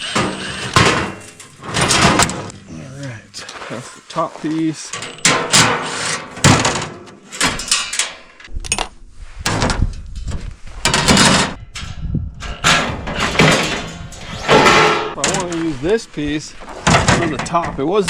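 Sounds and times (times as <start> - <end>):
metal pieces banging and scraping: 0.0 - 2.6, 4.9 - 15.7.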